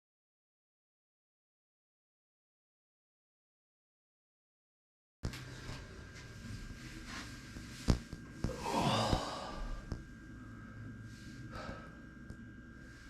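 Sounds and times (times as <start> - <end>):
person sighing heavily: 8.5 - 9.9.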